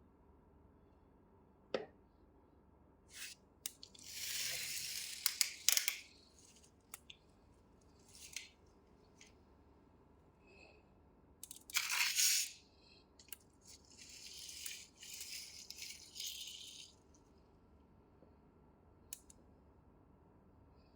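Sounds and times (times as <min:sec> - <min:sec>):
hissing rustling scrape: 0:03.1 - 0:06.7, 0:13.7 - 0:17.0.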